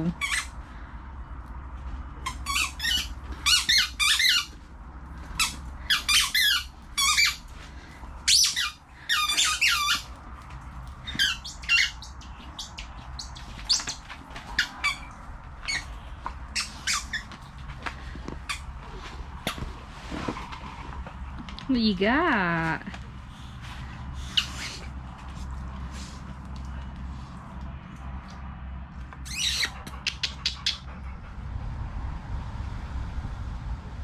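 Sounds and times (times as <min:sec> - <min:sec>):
squeaky dog toy squeaking: 0:00.2 - 0:00.5, 0:02.2 - 0:04.6, 0:05.4 - 0:07.4, 0:08.3 - 0:10.1, 0:11.0 - 0:14.0, 0:14.6 - 0:15.9, 0:16.5 - 0:17.4, 0:29.2 - 0:30.7.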